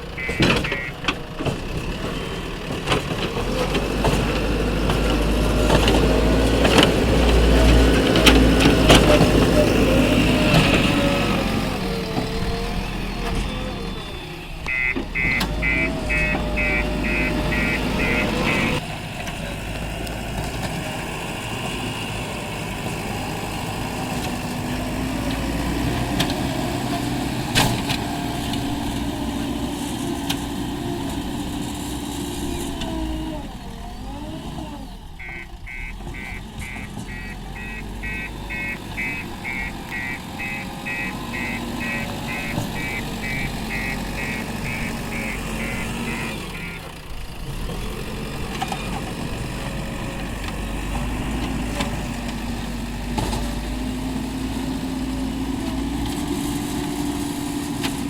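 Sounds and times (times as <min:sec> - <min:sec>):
diesel engines running: 0:00.0 - 0:58.0
rapid electronic beeping: 0:00.2 - 0:01.0, 0:14.7 - 0:18.8, 0:35.2 - 0:46.8.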